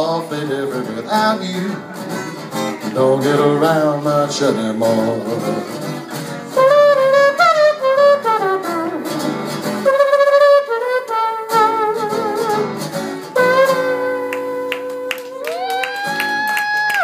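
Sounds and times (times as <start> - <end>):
backing track with guitar: 0.0 - 17.0
vocal trombone imitation: 6.5 - 15.4.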